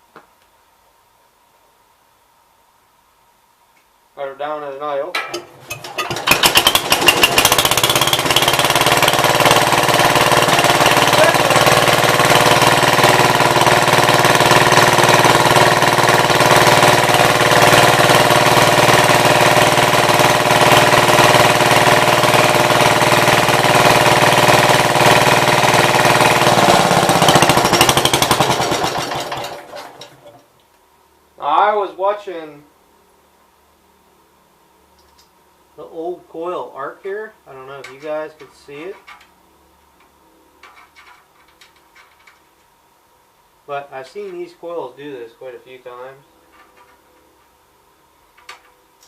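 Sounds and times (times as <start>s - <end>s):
tractor engine idling: 5.2s - 30.4s.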